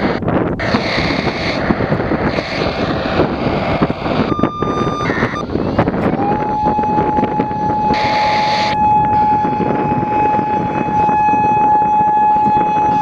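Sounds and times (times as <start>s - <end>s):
radio siren activation tones: 0.0s - 13.0s
wind buffeting microphone: 0.0s - 13.0s.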